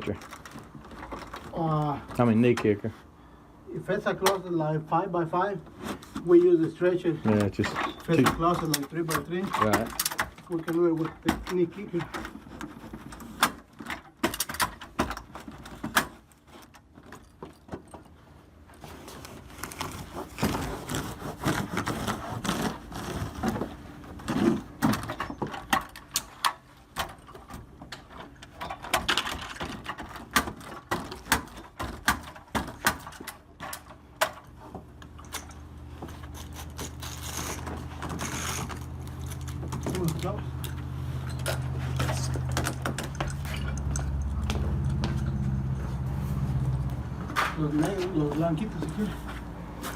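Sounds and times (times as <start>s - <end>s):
hand tools clicking and knocking: 7.3s - 18.2s, 24.2s - 46.0s.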